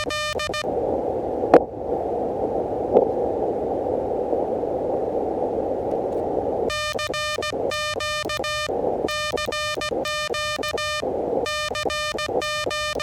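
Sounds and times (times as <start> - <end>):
morse code sidetone: 0.0 - 0.6, 6.7 - 13.0
sharp clicks: 0.0 - 0.6, 6.1 - 13.0
radio receiver hiss: 0.0 - 0.7, 5.9 - 13.0.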